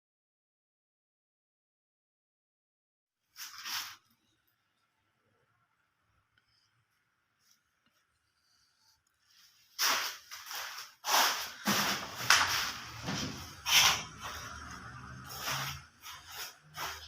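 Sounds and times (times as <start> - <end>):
hand tool rasping wood: 11.1 - 17.0.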